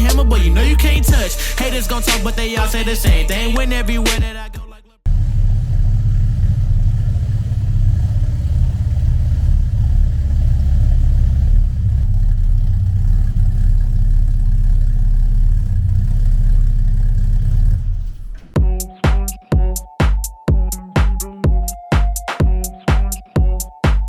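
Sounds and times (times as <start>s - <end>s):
car engine rumbling: 0.0s - 4.1s, 5.1s - 18.8s.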